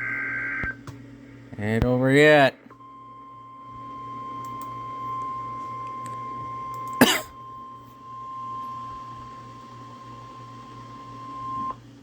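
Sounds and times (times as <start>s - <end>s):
loud cough: 7.0s - 7.4s.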